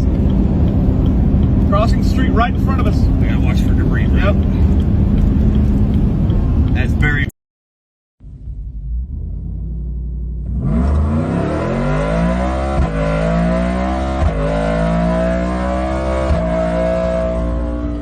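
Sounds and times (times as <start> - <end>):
car engine revving: 0.0 - 7.3, 8.3 - 18.0.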